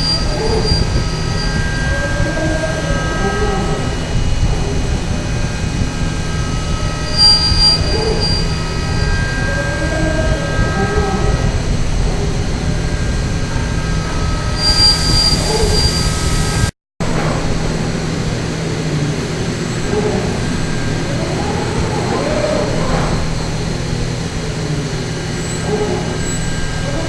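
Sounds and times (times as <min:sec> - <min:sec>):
milling machine whine: 0:00.0 - 0:16.7.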